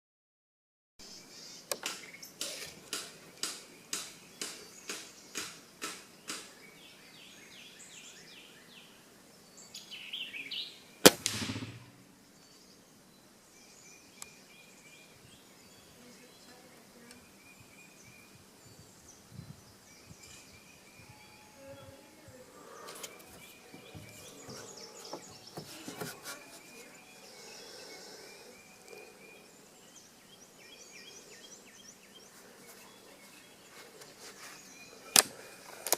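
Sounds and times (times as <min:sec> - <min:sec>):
small birds chirping: 0:01.0 - 0:35.9
regular clicks: 0:01.7 - 0:06.5, 0:35.1 - 0:35.9
air rifle shot: 0:11.0 - 0:12.1.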